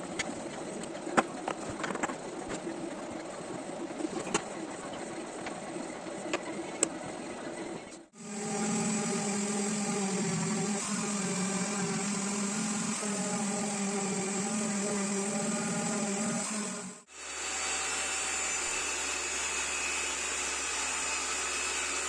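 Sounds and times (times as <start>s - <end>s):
power tool motor humming: 8.2s - 19.3s.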